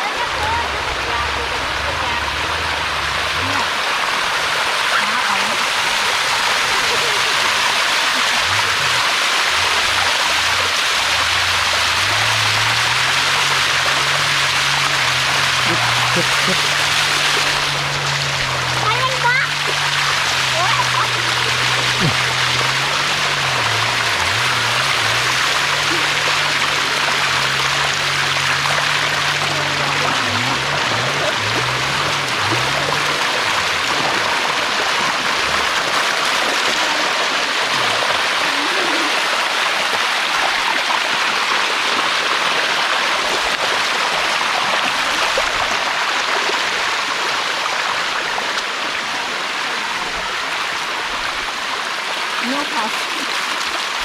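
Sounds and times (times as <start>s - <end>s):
low tone shifting in pitch: 0.0s - 5.2s, 8.2s - 35.8s
waterfall rushing: 0.0s - 54.0s.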